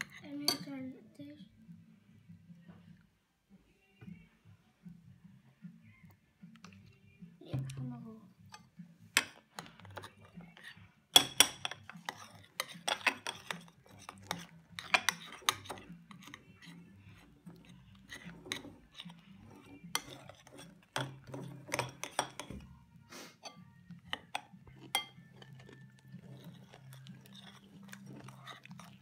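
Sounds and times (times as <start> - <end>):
spoon stirring slime: 0.0 - 0.9, 6.5 - 29.0
spoon clinking against bowl: 8.5 - 22.6, 23.4 - 29.0.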